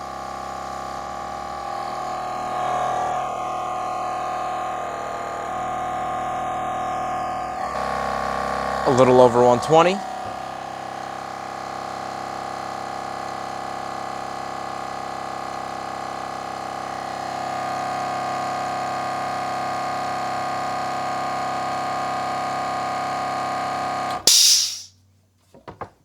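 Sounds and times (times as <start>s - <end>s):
air compressor humming: 0.0s - 11.2s, 24.2s - 24.9s.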